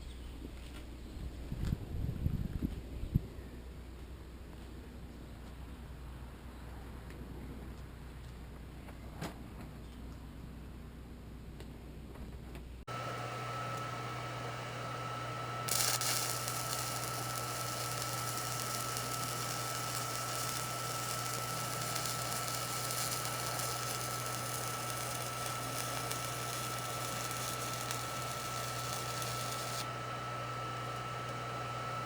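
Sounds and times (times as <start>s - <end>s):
constant hum: 0.0s - 32.0s
arc welding crackling and sizzling: 12.9s - 32.0s.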